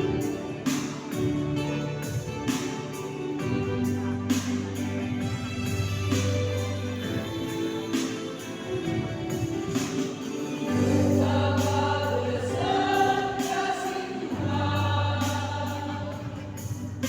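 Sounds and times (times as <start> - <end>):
choir singing held chords: 9.7 - 17.0.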